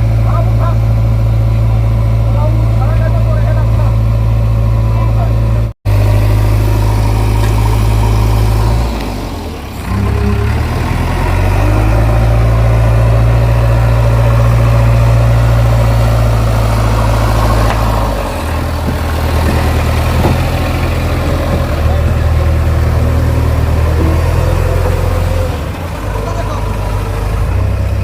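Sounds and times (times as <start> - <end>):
diesel engine running under load: 0.0 - 28.0.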